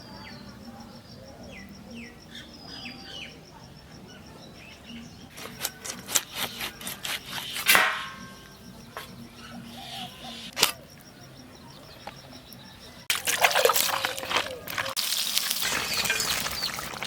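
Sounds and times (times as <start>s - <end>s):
birds chirping faintly: 0.0s - 17.0s.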